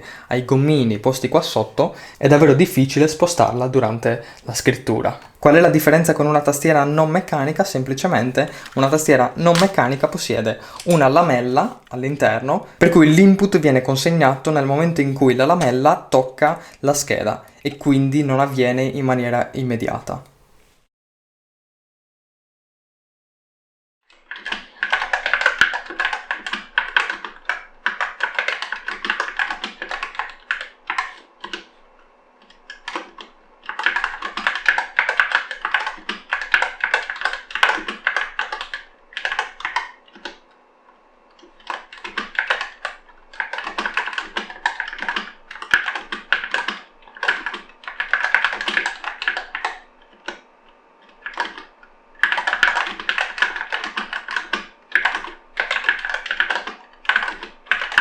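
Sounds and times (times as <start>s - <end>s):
mechanical keyboard key clacks: 8.5s - 10.1s.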